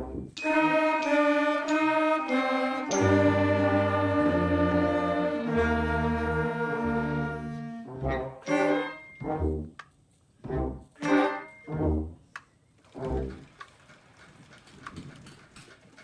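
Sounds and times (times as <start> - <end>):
wind band playing chords: 0.0 - 9.7, 10.5 - 12.1.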